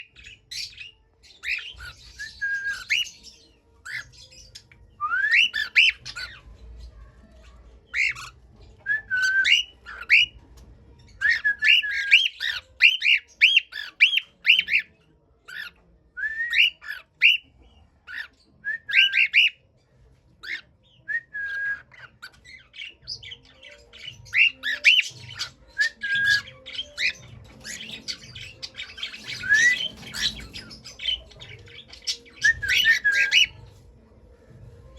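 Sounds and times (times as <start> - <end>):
scratchy bird chatter: 0.0 - 14.9, 22.0 - 33.8
cockatiel whistling and chirping: 0.2 - 3.2, 3.9 - 6.4, 7.9 - 10.4, 11.2 - 14.9, 15.5 - 17.5, 18.1 - 19.6, 20.4 - 23.4, 24.0 - 31.2, 31.8 - 33.6.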